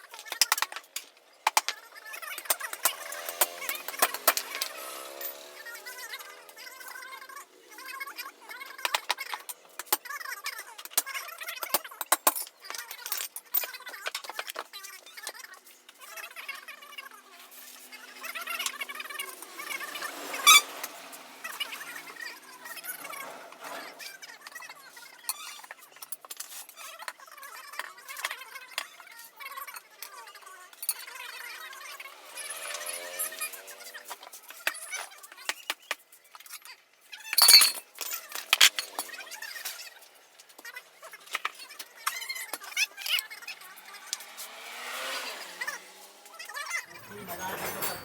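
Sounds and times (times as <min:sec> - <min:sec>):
metal tools clinking on wheel rim: 0:00.1 - 0:07.2, 0:10.8 - 0:16.2, 0:25.0 - 0:48.0
short squeaks: 0:19.8 - 0:21.0
metal tool clicks and clinks: 0:37.3 - 0:39.2.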